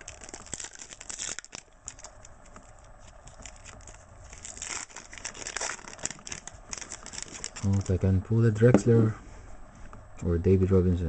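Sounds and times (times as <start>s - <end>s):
wrapper tearing and crinkling: 0.0s - 8.0s.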